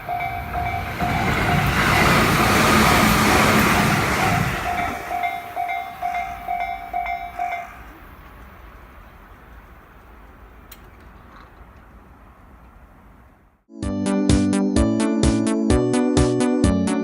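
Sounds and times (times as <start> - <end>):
level crossing alarm clanging: 0.0 - 8.0
passing train: 0.0 - 13.7.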